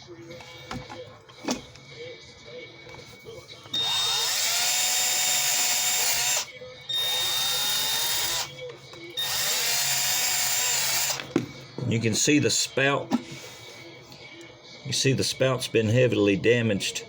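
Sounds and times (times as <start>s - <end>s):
electric drill with abrasive wheel: 3.7s - 8.5s, 9.2s - 11.3s.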